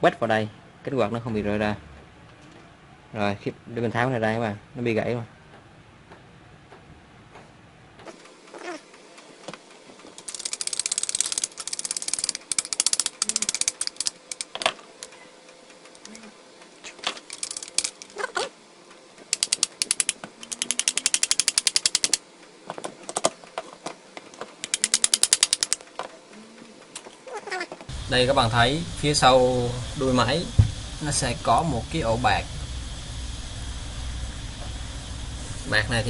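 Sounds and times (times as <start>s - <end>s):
ratcheting hand tool clicking: 10.2s - 14.6s, 17.3s - 18.2s, 19.3s - 22.2s, 24.6s - 25.8s.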